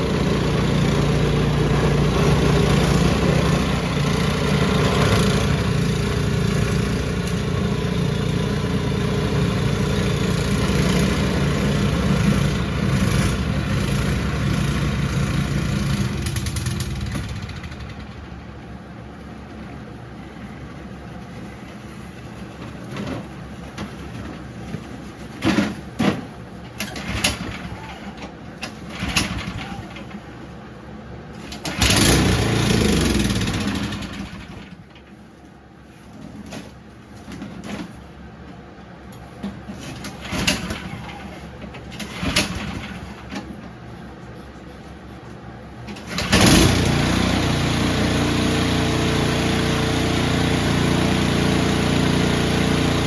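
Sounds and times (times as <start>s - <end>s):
snowblower engine running: 0.0s - 22.9s, 31.4s - 34.9s, 39.9s - 43.6s, 45.9s - 53.0s.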